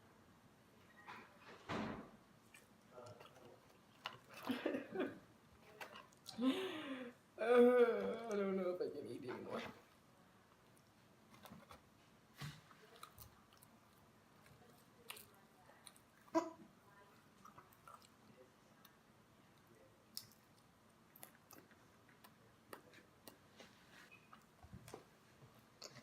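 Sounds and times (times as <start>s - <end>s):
person chewing food: 2.4s - 6.4s, 10.6s - 16.4s, 17.2s - 26.0s.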